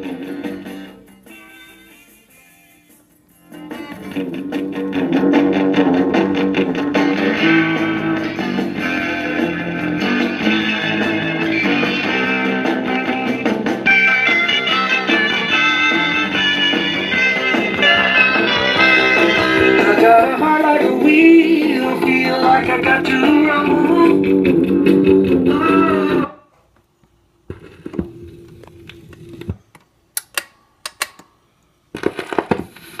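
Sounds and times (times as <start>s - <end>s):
guitar music from record player: 0.0s - 26.4s
steady hum: 3.2s - 26.2s
record player playing vocal record: 14.7s - 26.4s, 32.0s - 33.0s.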